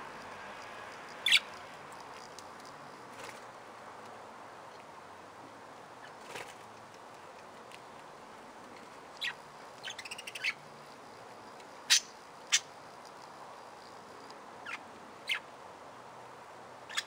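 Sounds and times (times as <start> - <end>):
steady background hiss: 0.0 - 17.0
budgerigars chirping: 1.2 - 1.5, 9.2 - 10.6, 11.9 - 12.7.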